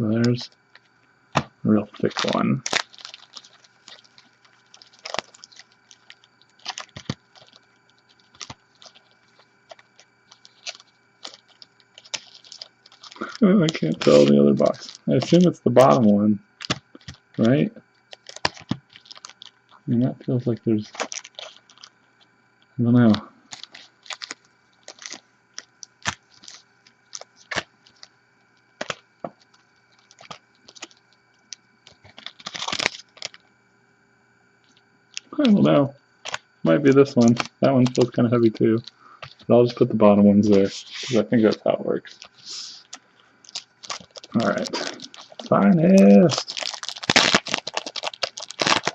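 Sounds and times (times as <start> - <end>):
card packs being shuffled: 0.2 - 16.0, 16.6 - 19.8, 20.8 - 22.0, 23.0 - 28.1, 28.8 - 31.0, 31.9 - 33.4, 36.2 - 48.9.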